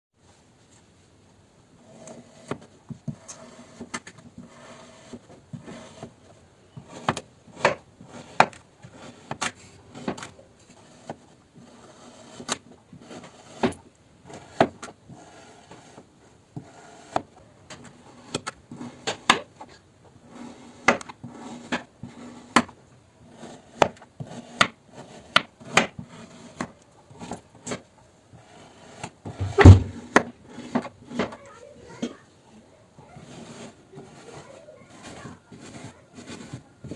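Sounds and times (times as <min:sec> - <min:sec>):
blade cutting sand: 0:06.8 - 0:17.3, 0:20.2 - 0:26.7, 0:33.2 - 0:36.9
heavy thump: 0:29.3 - 0:30.2.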